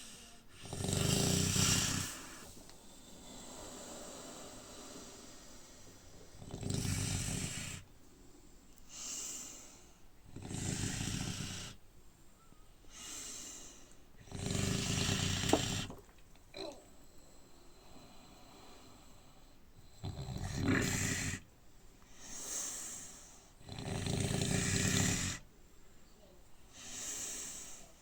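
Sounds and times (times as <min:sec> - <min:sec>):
pigs snoring: 0:00.0 - 0:07.9, 0:09.0 - 0:11.8, 0:14.2 - 0:16.1, 0:17.8 - 0:21.5, 0:22.2 - 0:25.5
airy breathing of sleeper: 0:00.0 - 0:10.2, 0:12.9 - 0:14.0, 0:22.1 - 0:23.6, 0:26.7 - 0:28.0
pig snorting: 0:00.6 - 0:02.6, 0:20.0 - 0:21.4.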